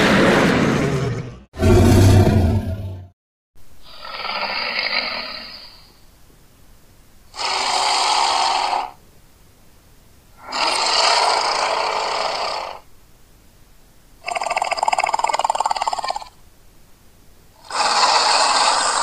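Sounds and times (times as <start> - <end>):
monster growls: 0.0 - 3.1, 3.8 - 5.9, 10.4 - 12.8, 17.6 - 19.0.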